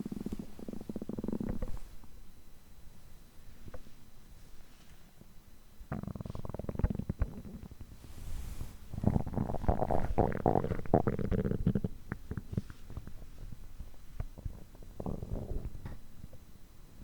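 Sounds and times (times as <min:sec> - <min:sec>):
stomach growling and gurgling: 0:00.0 - 0:01.8, 0:05.9 - 0:08.0, 0:08.9 - 0:16.4.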